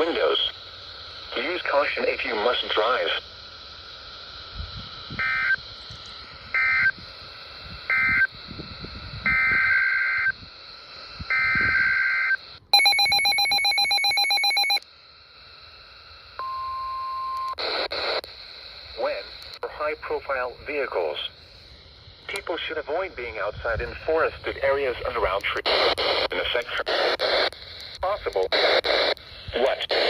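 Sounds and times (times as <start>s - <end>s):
warbling data bursts: 0.0s - 14.8s
broadcast hiss: 0.0s - 30.0s
steady single beep: 11.3s - 14.8s, 16.4s - 17.6s.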